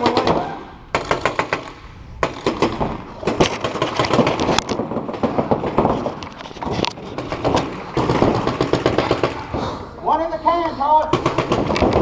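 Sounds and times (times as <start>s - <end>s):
paintball markers firing: 0.0s - 6.3s, 11.1s - 12.0s.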